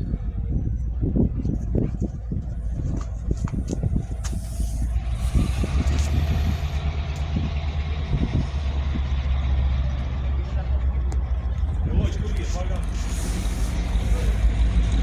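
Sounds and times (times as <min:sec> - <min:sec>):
locomotive engine rumbling: 0:00.0 - 0:15.0
air hiss: 0:04.1 - 0:06.9, 0:12.8 - 0:14.6.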